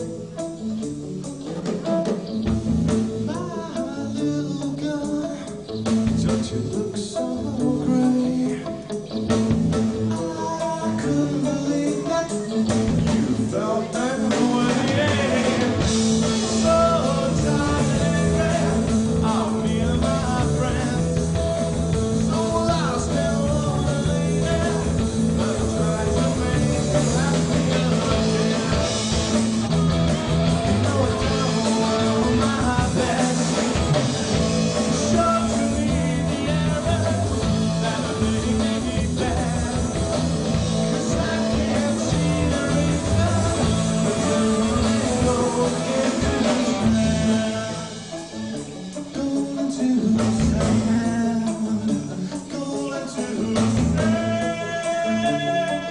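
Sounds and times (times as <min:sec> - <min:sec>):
bass line: 0:00.0 - 0:55.9
guitars: 0:00.0 - 0:55.9
person singing: 0:00.0 - 0:55.9.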